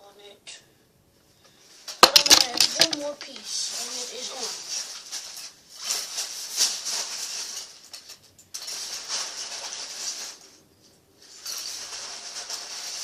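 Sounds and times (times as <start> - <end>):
plastic pieces clattering: 2.0 - 3.4, 4.4 - 10.5, 11.3 - 13.0.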